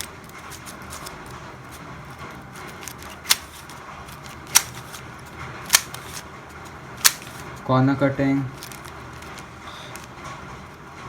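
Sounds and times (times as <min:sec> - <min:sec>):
puzzle cube layers turning: 0:00.0 - 0:07.6
sharp clicks: 0:02.6 - 0:05.0, 0:05.7 - 0:06.2, 0:07.0 - 0:07.5.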